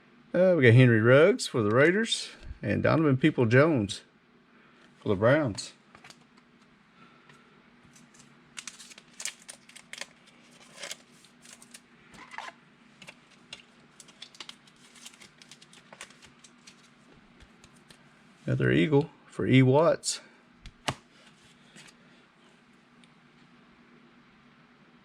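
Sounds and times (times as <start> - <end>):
faint steady hum: 0.0 - 25.0
cards clicking and rustling: 7.9 - 18.0.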